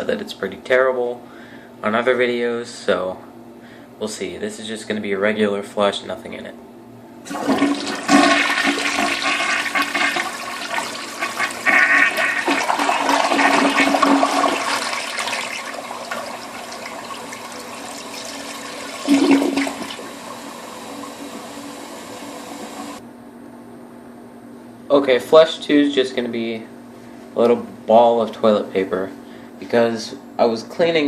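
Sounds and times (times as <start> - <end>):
toilet flushing: 7.2 - 23.0
refill water hissing: 7.3 - 23.0.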